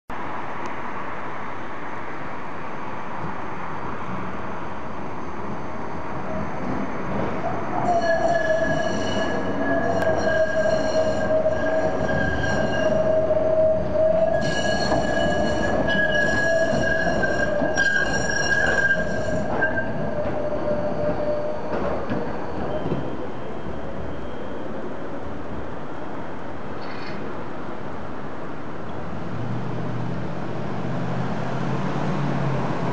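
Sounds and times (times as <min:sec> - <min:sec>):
tram wheels squealing on rails: 0:05.2 - 0:26.1, 0:26.8 - 0:27.4.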